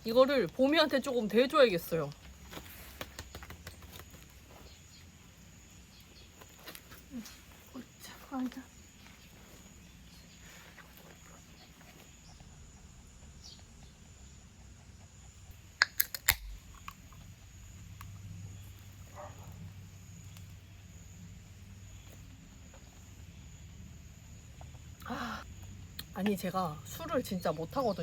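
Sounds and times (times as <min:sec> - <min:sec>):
insects droning: 0:00.0 - 0:28.0
low background hum: 0:00.0 - 0:28.0
sharp clicks: 0:15.8 - 0:17.3.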